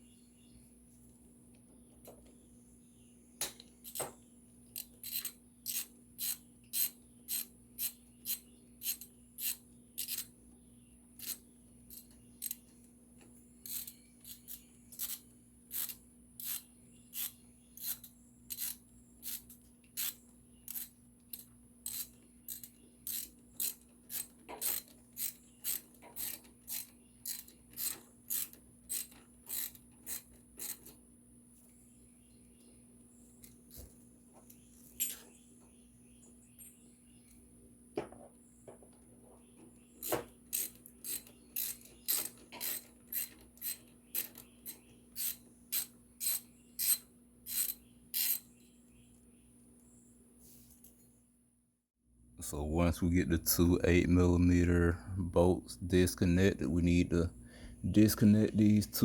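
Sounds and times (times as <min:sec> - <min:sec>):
faint steady hum: 0:00.0 - 0:59.0
ratchet wrench clicking: 0:04.8 - 0:10.3, 0:11.2 - 0:12.6, 0:13.6 - 0:30.9, 0:40.0 - 0:48.5.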